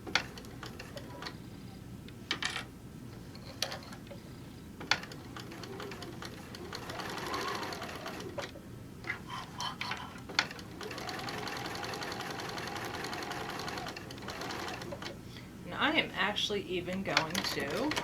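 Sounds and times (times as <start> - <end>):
sewing machine stitching: 5.0 - 8.5, 10.3 - 15.2, 17.1 - 18.0.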